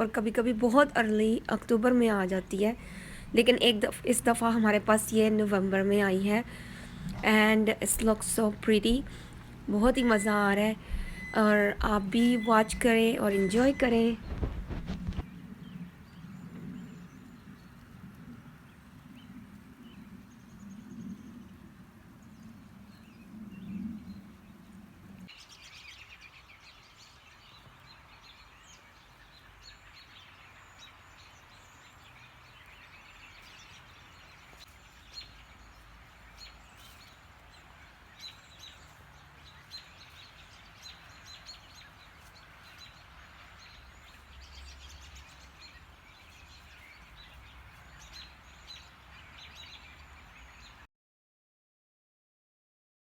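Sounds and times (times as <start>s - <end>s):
low hum: 0.0s - 15.2s
small birds chirping: 0.0s - 17.9s, 18.6s - 50.8s.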